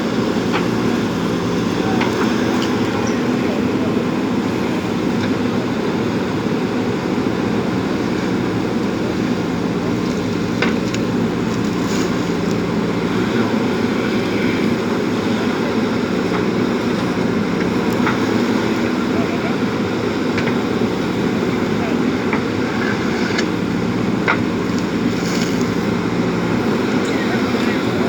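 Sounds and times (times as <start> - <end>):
diesel engine running: 0.0 - 28.0.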